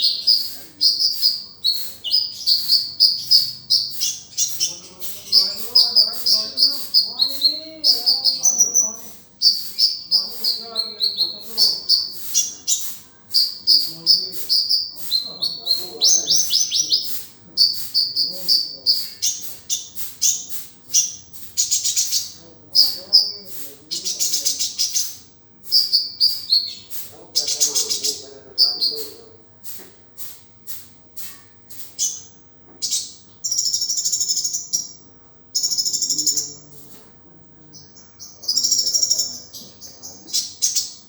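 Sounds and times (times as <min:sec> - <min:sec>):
low bird warbling: 0:00.0 - 0:25.2
bird chirping and trilling: 0:00.0 - 0:29.4, 0:31.2 - 0:37.0, 0:37.6 - 0:41.0
buzzy rattling bird calls: 0:00.0 - 0:37.0, 0:37.7 - 0:41.0.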